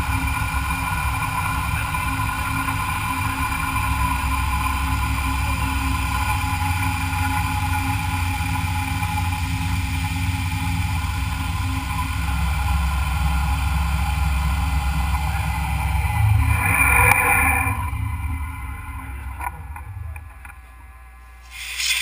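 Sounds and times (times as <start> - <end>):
machine tool machining metal: 21.5 - 22.0.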